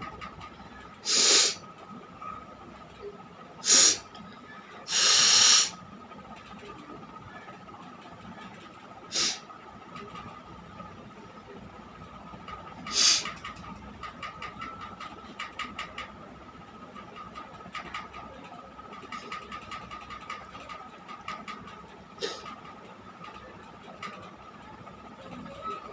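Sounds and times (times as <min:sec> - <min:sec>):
steady thin hum: 0:00.0 - 0:25.9
sharp nasal air bursts: 0:01.0 - 0:01.6, 0:03.6 - 0:04.0, 0:04.9 - 0:05.8, 0:09.1 - 0:09.4, 0:12.9 - 0:13.2.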